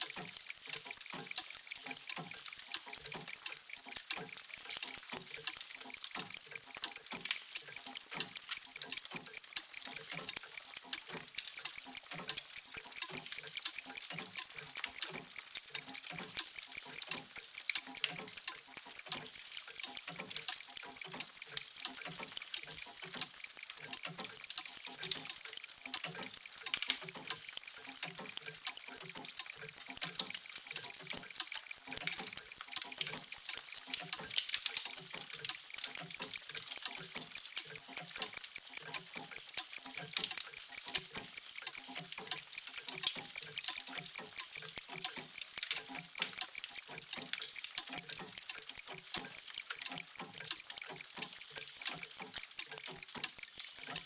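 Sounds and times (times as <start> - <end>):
many mechanical clocks ticking: 0.0 - 54.0.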